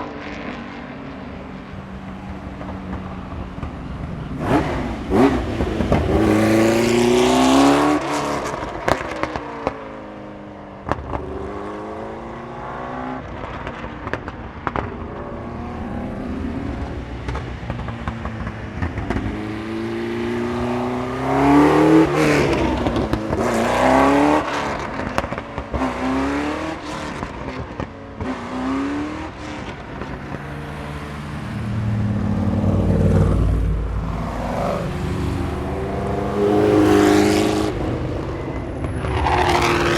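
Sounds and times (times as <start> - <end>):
racing engine accelerating: 31.2 - 39.9.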